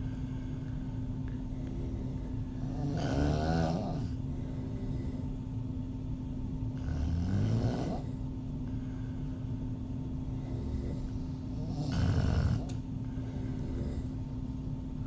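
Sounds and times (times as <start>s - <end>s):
soft breath: 0.0s - 2.9s, 3.8s - 5.7s, 8.0s - 15.0s
woman snoring: 1.5s - 5.3s, 6.8s - 8.2s, 10.3s - 14.2s.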